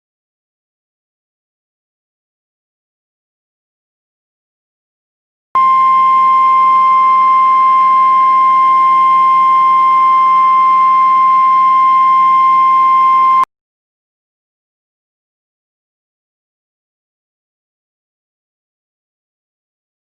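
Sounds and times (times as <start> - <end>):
steady loud alarm tone: 5.6 - 13.5.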